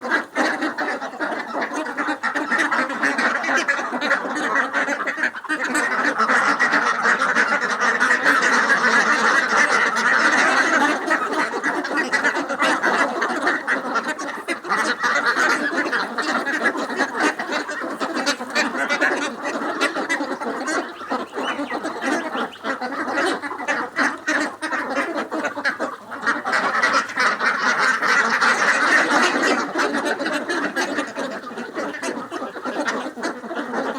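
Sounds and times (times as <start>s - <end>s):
ducks quacking: 0.0s - 33.9s.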